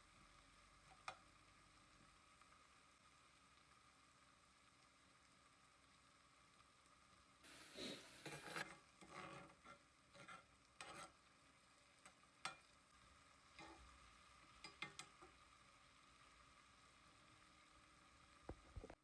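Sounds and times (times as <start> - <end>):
utensil scraping in a pan: 7.5 - 12.7, 13.5 - 15.4.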